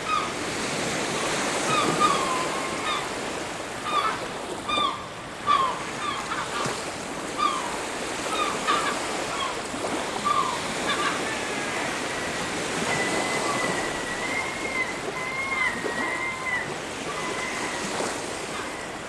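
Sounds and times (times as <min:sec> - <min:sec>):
surf washing on a beach: 0:00.0 - 0:19.0.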